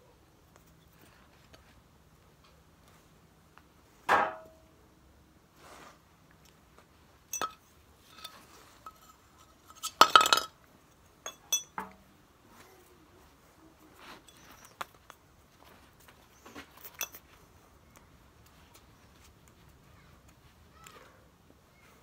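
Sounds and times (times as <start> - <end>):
metal objects clinking: 7.3 - 12.0, 16.7 - 17.3.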